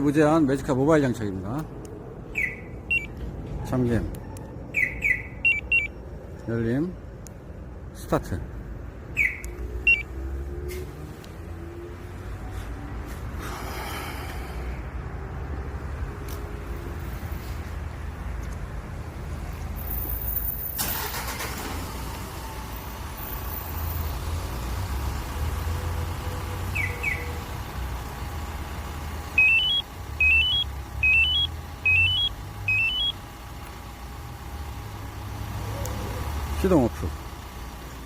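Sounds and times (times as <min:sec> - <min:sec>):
short high beeps: 0:02.4 - 0:03.1, 0:04.2 - 0:06.0
rising electronic chirps: 0:04.7 - 0:06.0, 0:29.4 - 0:33.2
diesel truck engine idling: 0:17.5 - 0:38.0.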